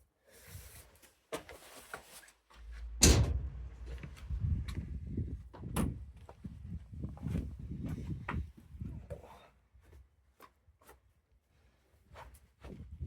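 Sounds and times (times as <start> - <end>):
loud thump: 2.6 - 5.0
low rumbling handling noise: 2.6 - 6.3.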